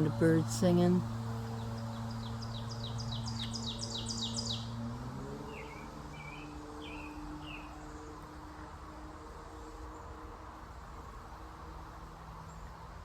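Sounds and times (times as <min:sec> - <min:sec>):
songbirds chirping: 0:00.0 - 0:13.0
traffic engine hum: 0:00.0 - 0:13.0.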